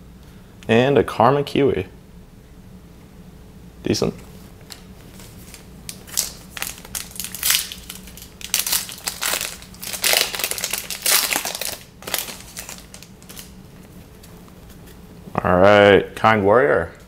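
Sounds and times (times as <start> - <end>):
wrapper tearing and crinkling: 4.7 - 13.6.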